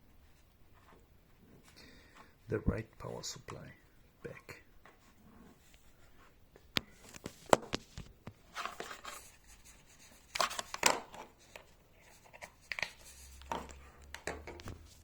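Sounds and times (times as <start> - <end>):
cable rustling: 4.2 - 15.0.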